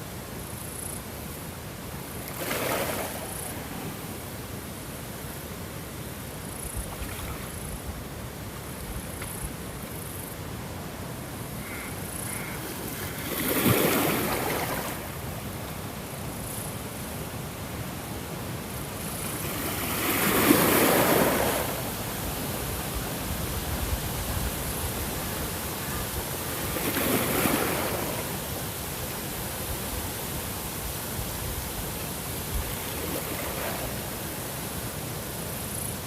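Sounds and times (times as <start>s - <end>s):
steady hiss of surf: 0.0s - 36.0s
ocean waves breaking: 2.2s - 4.2s, 11.1s - 15.2s, 19.0s - 23.9s, 24.6s - 30.0s, 32.6s - 34.4s.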